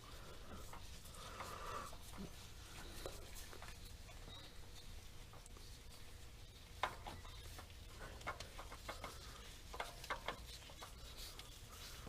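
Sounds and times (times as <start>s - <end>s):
low steady hum: 0.0s - 12.0s
clicks and taps: 6.8s - 10.8s.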